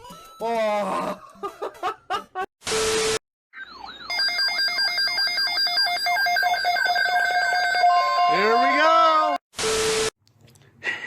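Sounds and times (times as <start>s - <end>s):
electronic ringtone tones: 3.6s - 8.8s.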